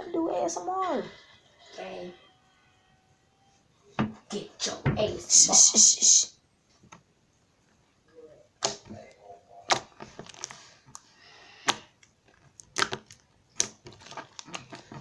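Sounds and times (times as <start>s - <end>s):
slime popping and clicking: 11.6s - 14.7s.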